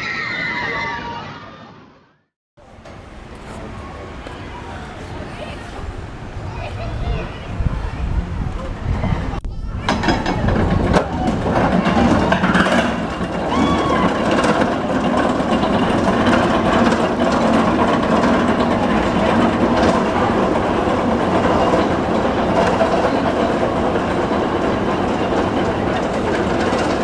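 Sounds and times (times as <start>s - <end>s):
roller coaster wheels on rails: 2.6s - 27.0s
wheel squeal: 9.0s - 27.0s.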